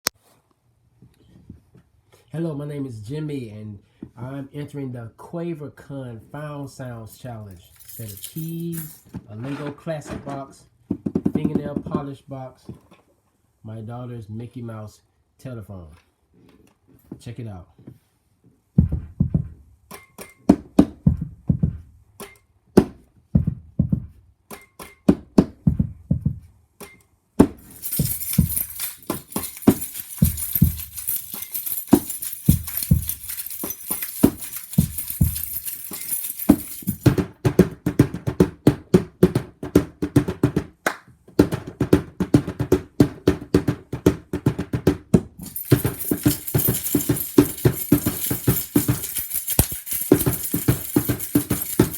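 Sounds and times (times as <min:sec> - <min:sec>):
bright jingling: 0:07.5 - 0:09.1, 0:27.6 - 0:37.1, 0:45.4 - 0:51.9.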